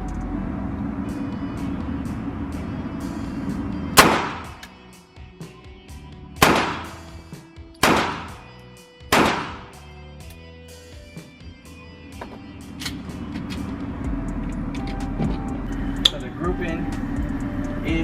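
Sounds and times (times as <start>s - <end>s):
background music: 0.0s - 18.0s
pistol shots: 4.0s - 4.7s, 6.4s - 7.1s, 7.8s - 8.5s, 9.1s - 9.8s.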